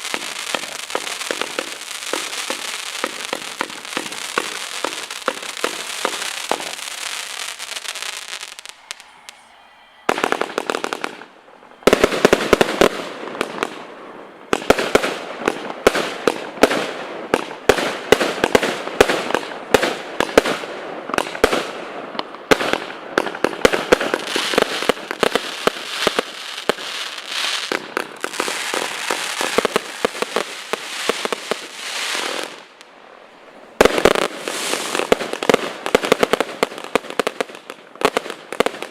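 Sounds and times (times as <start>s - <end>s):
fireworks firing and crackling: 0.0s - 38.9s.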